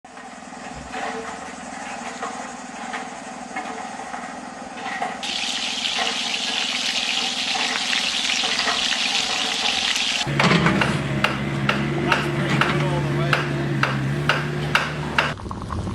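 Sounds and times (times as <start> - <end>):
water running from a tap: 5.2 - 10.3.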